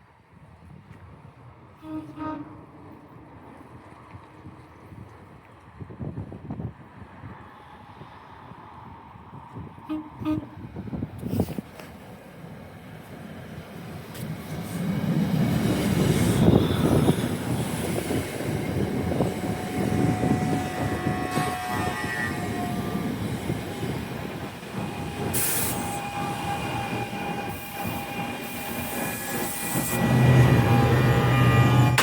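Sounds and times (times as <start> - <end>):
train rumbling on rails: 1.1 - 32.0
metallic squealing: 24.8 - 32.0.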